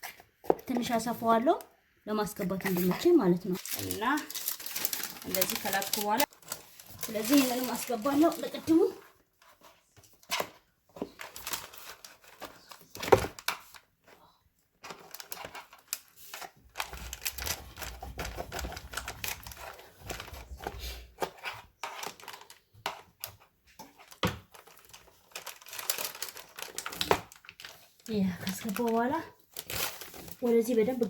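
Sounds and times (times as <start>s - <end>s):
floor tile clicking and scraping: 14.8s - 27.8s.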